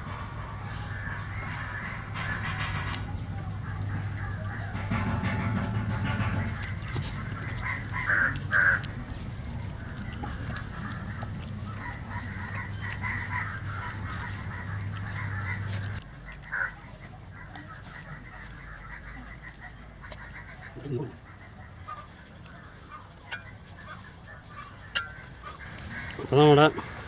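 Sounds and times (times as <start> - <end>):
low hum: 0.0 - 16.0
birds calling: 0.0 - 27.0.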